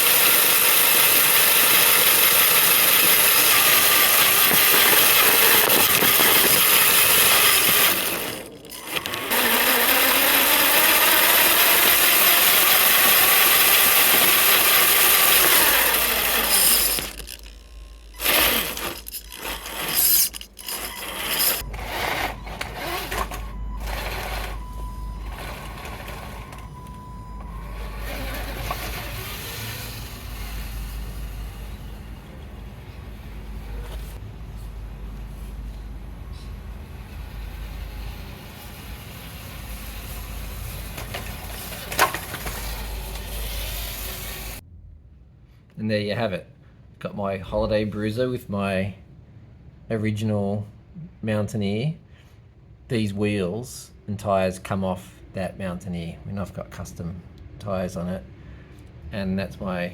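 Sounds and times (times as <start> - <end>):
toy truck motor whirring: 0.0 - 32.5, 36.9 - 44.6.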